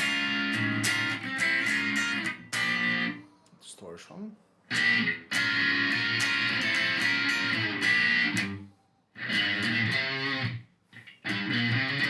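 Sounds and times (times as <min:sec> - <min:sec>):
distorted electric guitar: 0:00.0 - 0:03.2, 0:04.7 - 0:08.6, 0:09.2 - 0:12.0.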